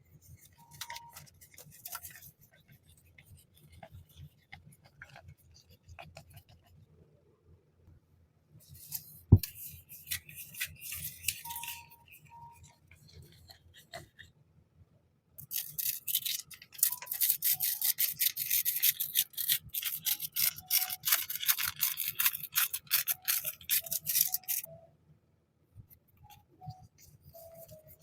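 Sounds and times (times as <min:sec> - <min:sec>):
packaging rubbing and rustling: 0:15.4 - 0:24.7.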